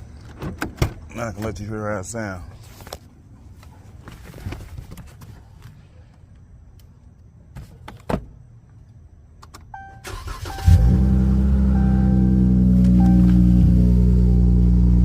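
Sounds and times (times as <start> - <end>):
car engine starting and idling: 9.4 - 15.0
short beep: 11.6 - 14.6.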